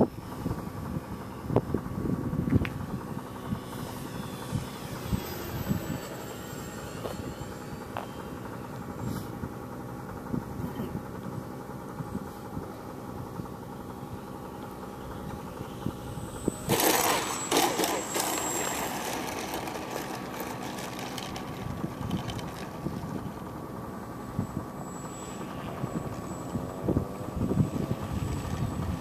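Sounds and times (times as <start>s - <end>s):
thin high whine: 0.0s - 11.2s, 12.1s - 29.0s
model plane motor buzzing: 0.0s - 29.0s.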